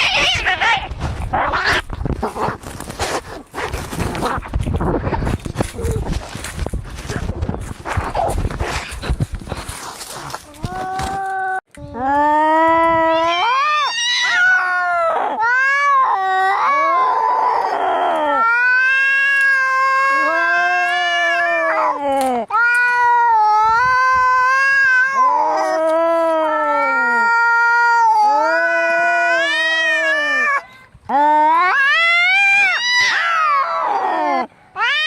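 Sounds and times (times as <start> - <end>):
cats yowling: 0.0 - 1.9, 13.0 - 30.6, 31.2 - 35.0.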